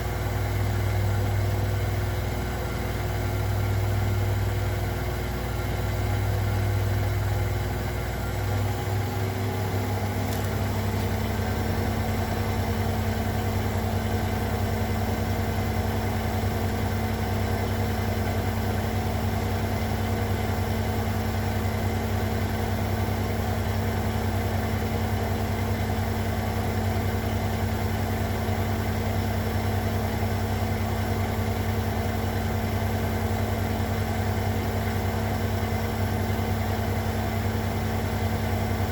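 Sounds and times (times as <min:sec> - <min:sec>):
motor and drum hum: 0:07.8 - 0:19.8
washing machine spinning: 0:08.9 - 0:17.8.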